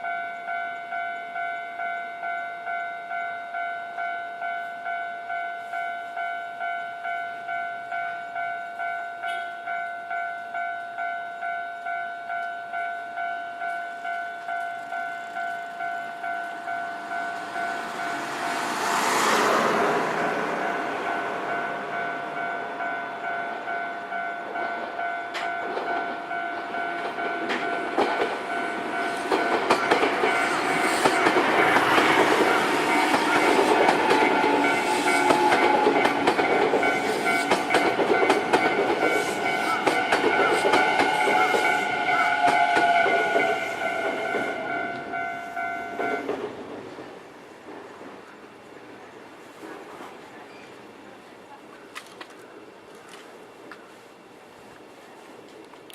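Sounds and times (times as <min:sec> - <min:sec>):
train wheels clacking over rails: 0:17.1 - 0:48.2.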